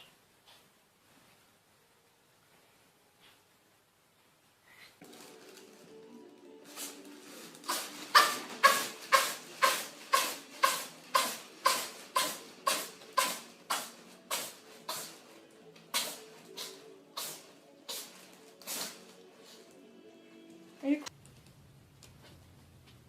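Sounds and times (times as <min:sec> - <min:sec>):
cat sneezing: 0:07.6 - 0:15.3, 0:15.9 - 0:19.1.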